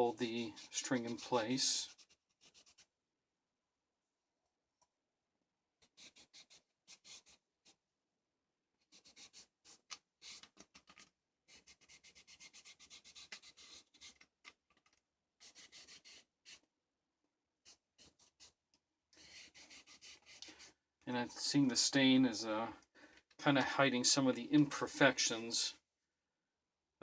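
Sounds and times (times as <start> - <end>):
faint rubbing strokes on string: 0.1 - 1.9.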